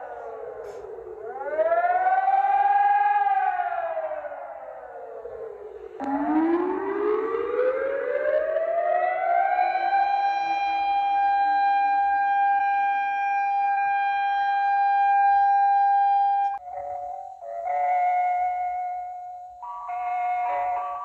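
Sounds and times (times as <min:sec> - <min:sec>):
air-raid siren wailing: 0:00.0 - 0:21.0.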